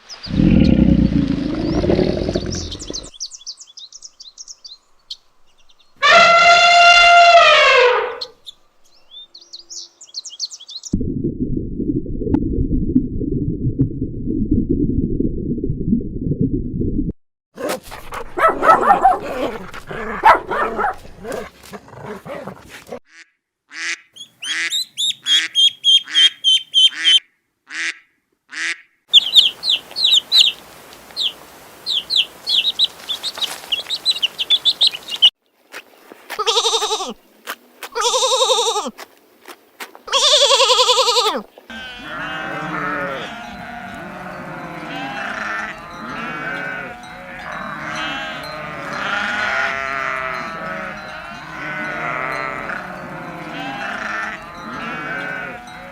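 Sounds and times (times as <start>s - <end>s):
flock bleating: 36.3s - 37.2s, 37.9s - 38.9s, 40.1s - 55.9s.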